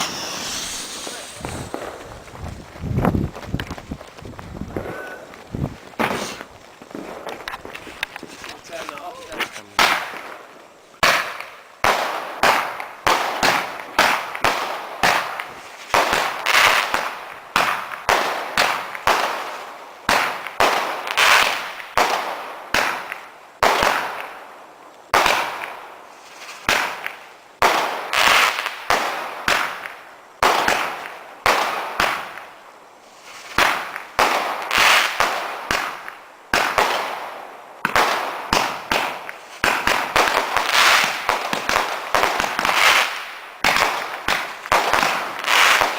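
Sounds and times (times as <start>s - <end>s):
firework bangs with hiss: 0.0s - 2.4s, 6.0s - 45.9s.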